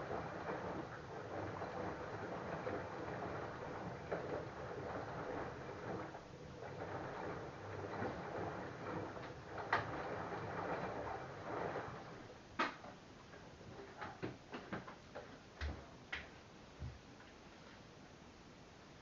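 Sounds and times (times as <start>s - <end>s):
machine clicks and knocks: 0.0s - 12.0s
washing machine drum sloshing: 0.0s - 13.0s.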